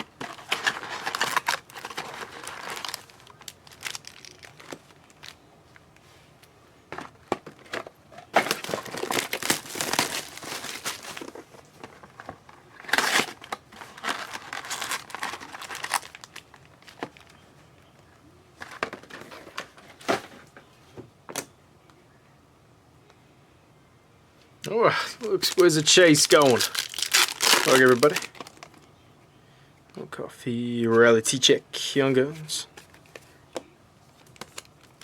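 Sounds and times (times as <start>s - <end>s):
wrappers crinkling and tearing: 0.0s - 5.4s, 8.3s - 11.4s, 12.8s - 17.3s, 25.1s - 28.8s, 34.2s - 35.0s.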